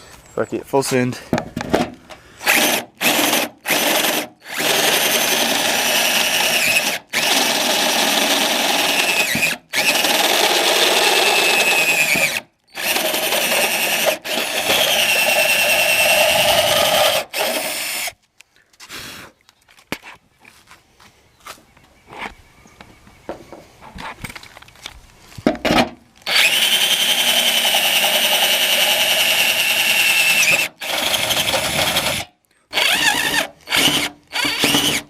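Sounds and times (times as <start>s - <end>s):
power drill whining: 2.4s - 18.2s, 26.2s - 35.0s.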